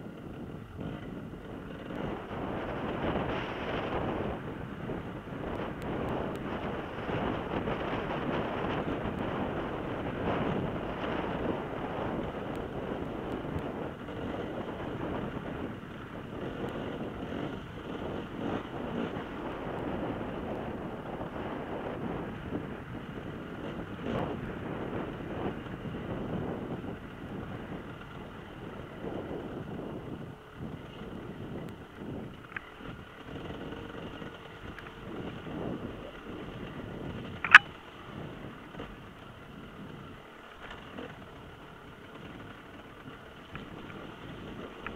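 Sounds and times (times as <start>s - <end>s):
off-road motorcycle engines: 0.0s - 44.9s
wind buffeting microphone: 0.0s - 44.9s
sharp click: 37.4s - 37.7s.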